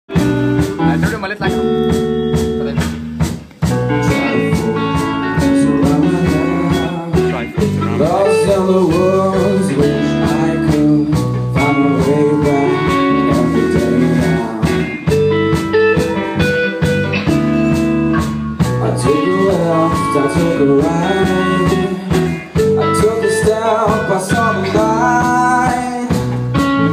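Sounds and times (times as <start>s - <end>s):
blues-rock guitar: 0.1s - 26.9s
steady drum beat: 0.1s - 26.9s.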